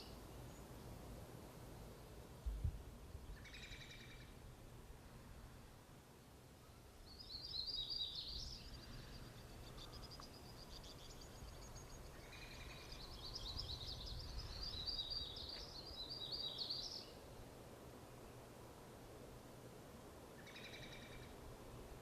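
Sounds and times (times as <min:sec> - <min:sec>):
songbirds warbling: 0:03.3 - 0:04.4, 0:07.1 - 0:17.2, 0:20.4 - 0:21.4.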